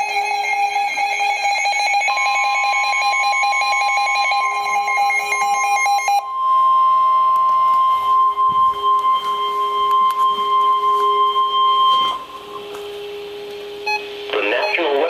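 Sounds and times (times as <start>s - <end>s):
buzzy electronic alarm: 0.0s - 15.0s
steady high alarm tone: 0.0s - 15.0s.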